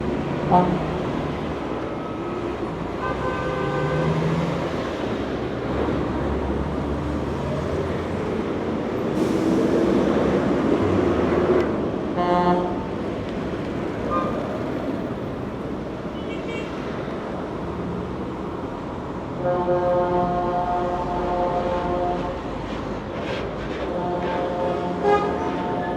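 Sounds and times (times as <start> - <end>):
traffic rumble: 0.0 - 25.9
vehicle horns: 0.4 - 1.0, 2.9 - 4.2, 12.2 - 12.9, 16.1 - 16.8, 19.4 - 22.4, 23.9 - 25.9.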